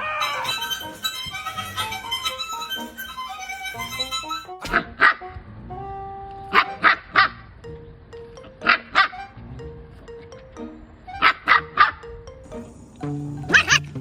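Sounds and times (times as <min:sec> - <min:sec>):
music playing: 0:00.0 - 0:14.0
dog barking: 0:04.6 - 0:05.2, 0:06.5 - 0:07.4, 0:08.6 - 0:09.2, 0:11.2 - 0:12.0.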